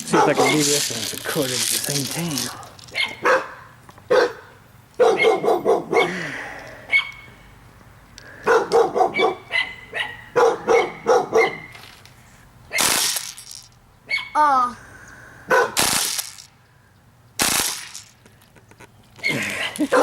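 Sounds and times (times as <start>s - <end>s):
dog barking: 0.0s - 0.7s, 3.0s - 6.2s, 8.4s - 11.7s, 15.5s - 15.8s, 19.2s - 20.0s
sharp cracks: 12.7s - 13.8s, 15.7s - 16.6s, 17.4s - 18.9s.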